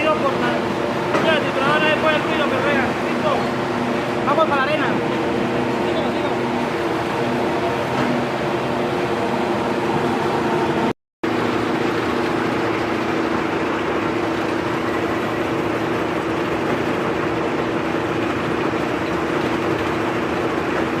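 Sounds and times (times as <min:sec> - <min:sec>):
machine humming: 0:00.0 - 0:21.0.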